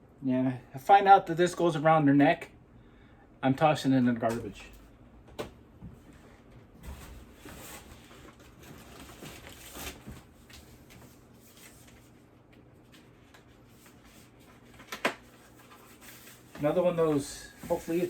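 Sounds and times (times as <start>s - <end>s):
packaging rustling: 7.2s - 12.2s.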